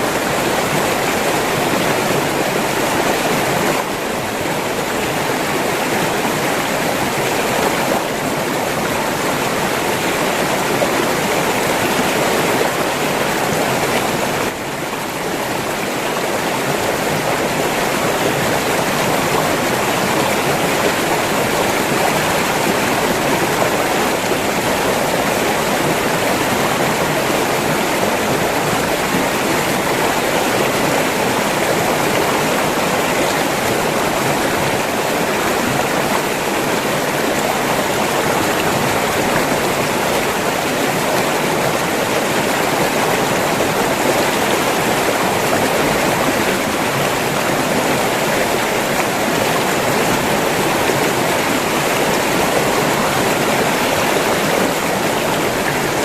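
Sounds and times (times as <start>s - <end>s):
river water rushing: 0.0s - 56.0s.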